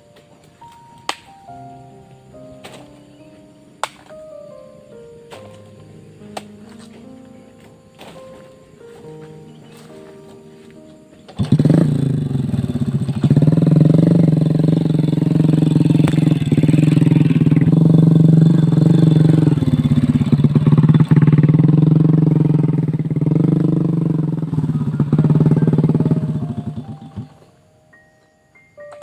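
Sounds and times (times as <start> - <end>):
motorcycle engine running: 11.2 - 27.5.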